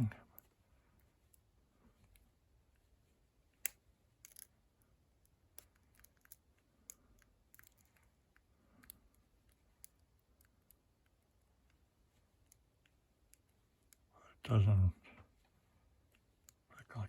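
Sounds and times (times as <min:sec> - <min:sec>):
lock pick clicking in padlock: 0:03.6 - 0:04.5, 0:05.6 - 0:08.0.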